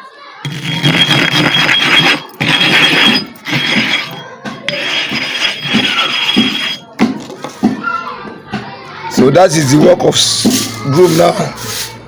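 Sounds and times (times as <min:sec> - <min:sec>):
sharpening stone scraping on iron: 0:00.5 - 0:07.0, 0:10.4 - 0:12.0.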